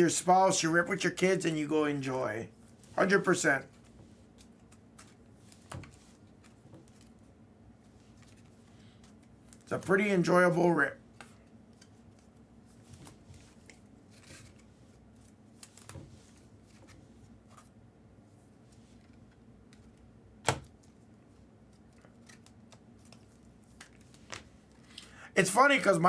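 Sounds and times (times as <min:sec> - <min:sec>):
cards clicking and rustling: 0:21.7 - 0:24.6.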